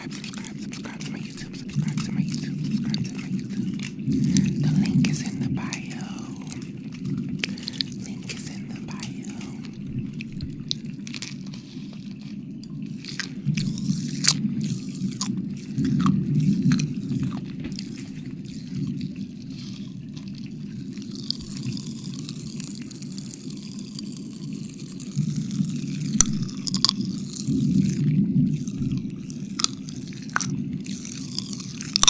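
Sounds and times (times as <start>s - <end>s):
steady low rumble: 0.0s - 32.0s
wet mouth licking and smacking: 0.0s - 32.0s.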